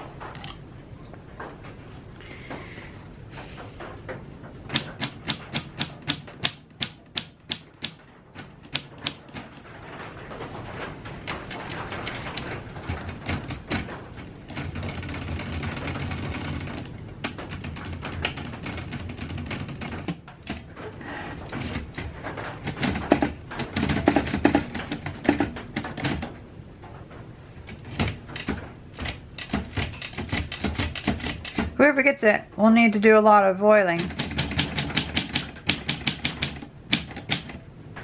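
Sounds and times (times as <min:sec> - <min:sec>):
manual typewriter keys clacking: 0:04.6 - 0:26.4, 0:27.6 - 0:31.8, 0:34.0 - 0:37.6.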